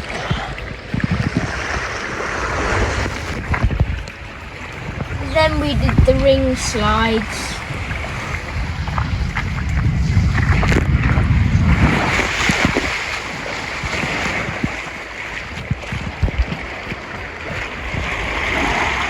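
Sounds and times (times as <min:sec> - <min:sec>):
water rushing down slide: 0:00.0 - 0:04.0
wind buffeting microphone: 0:00.0 - 0:19.0.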